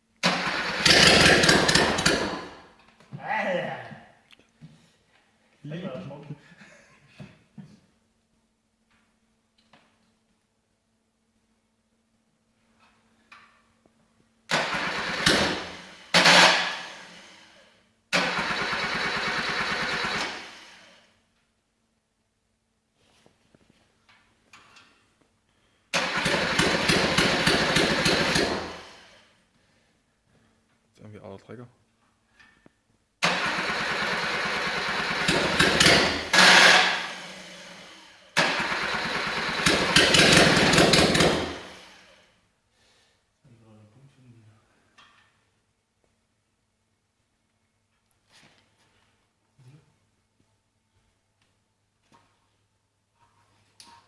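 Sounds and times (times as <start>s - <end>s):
car engine starting: 0.2s - 2.8s, 14.5s - 21.0s, 25.9s - 29.2s, 33.2s - 42.2s.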